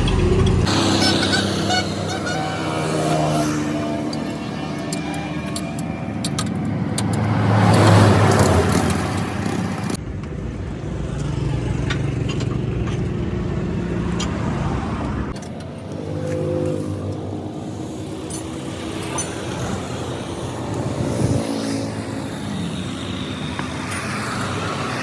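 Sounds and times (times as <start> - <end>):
vehicle engines running: 0.0 - 25.0
vehicle passing by: 0.0 - 25.0.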